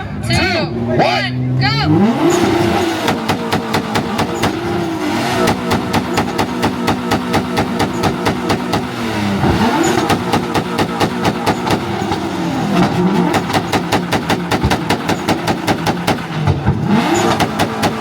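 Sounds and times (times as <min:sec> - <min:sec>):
car engine popping on rev limiter: 0:02.4 - 0:18.0.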